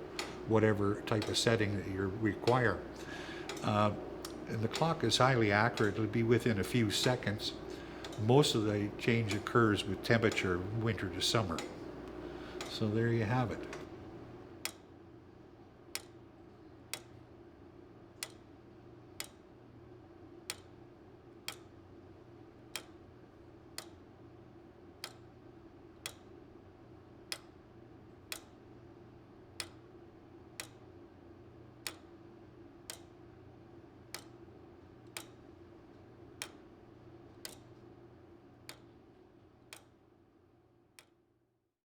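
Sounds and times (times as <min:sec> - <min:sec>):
tower clock ticking: 0:00.0 - 0:14.8, 0:15.9 - 0:16.2, 0:18.2 - 0:18.4, 0:19.1 - 0:19.4, 0:20.5 - 0:20.8, 0:21.4 - 0:21.8, 0:22.7 - 0:23.0, 0:23.7 - 0:24.0, 0:25.0 - 0:25.4, 0:26.0 - 0:26.4, 0:27.3 - 0:27.6, 0:28.2 - 0:28.7, 0:29.6 - 0:31.0, 0:31.7 - 0:33.3, 0:34.0 - 0:38.0, 0:38.6 - 0:40.0, 0:40.9 - 0:41.2.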